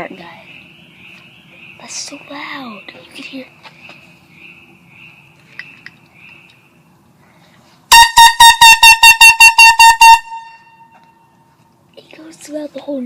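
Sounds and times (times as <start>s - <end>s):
air horn blasts: 7.9s - 11.1s.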